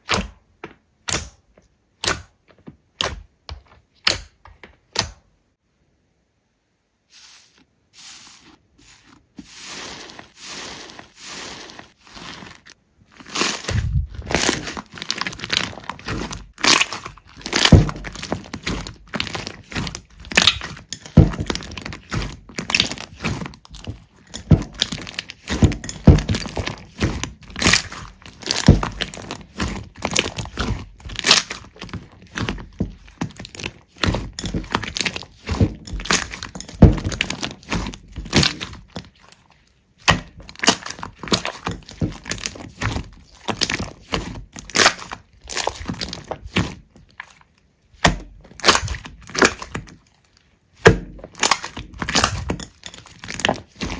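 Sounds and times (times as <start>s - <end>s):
sticky slime pops and crackles: 13.8s - 39.2s, 40.0s - 46.8s, 48.0s - 50.0s, 50.8s - 53.9s.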